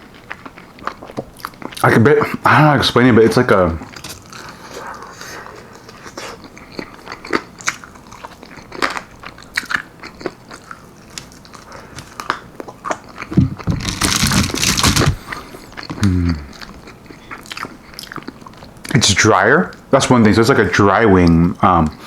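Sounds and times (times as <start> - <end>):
person biting and chewing: 3.8 - 18.5.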